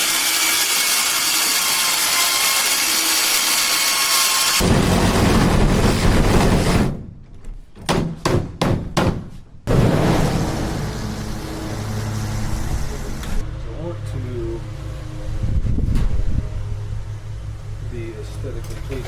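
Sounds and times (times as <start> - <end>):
power tool running: 0.0 - 5.7, 9.7 - 13.4.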